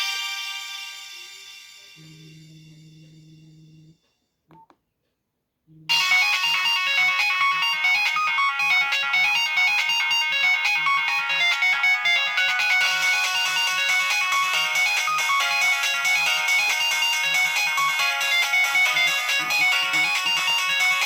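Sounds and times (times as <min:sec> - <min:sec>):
faint low hum: 0:02.0 - 0:04.8
phone ringtone melody: 0:05.9 - 0:21.0.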